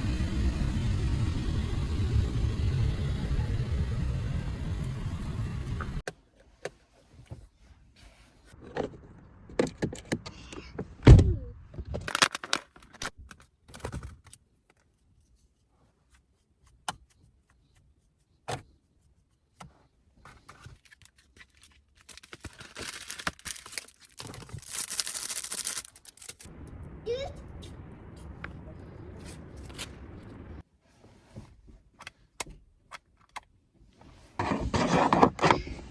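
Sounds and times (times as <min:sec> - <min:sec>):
low steady rumble: 0:00.0 - 0:06.0, 0:26.5 - 0:30.6
small objects clicking and rattling: 0:12.0 - 0:14.0, 0:20.9 - 0:26.5.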